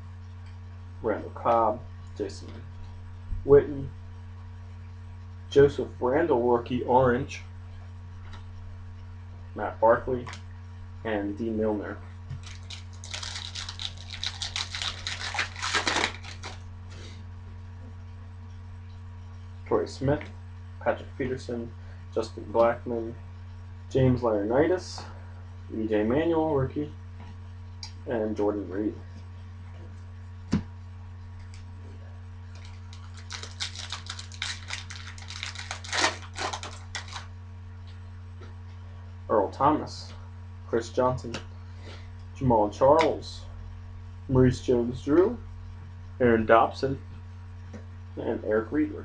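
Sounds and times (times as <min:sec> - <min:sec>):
low electrical hum: 0:00.0 - 0:49.0
foil pack crinkling: 0:12.3 - 0:16.6, 0:32.5 - 0:37.3.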